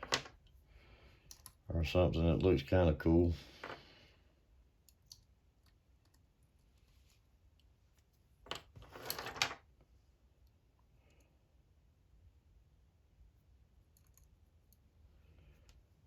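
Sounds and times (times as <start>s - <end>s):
small handling clicks: 1.3s - 1.6s.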